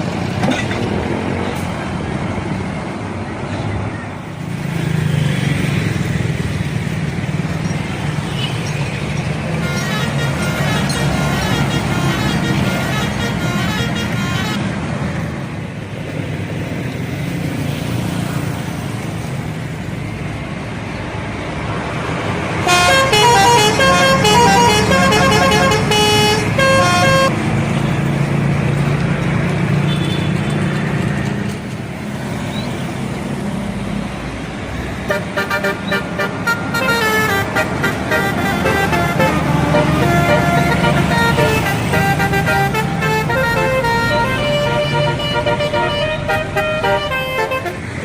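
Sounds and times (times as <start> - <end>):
bus engine: 0.0 - 48.0
road noise: 0.0 - 48.0
bus musical horn melody: 9.4 - 15.0, 22.6 - 27.4, 35.1 - 48.0.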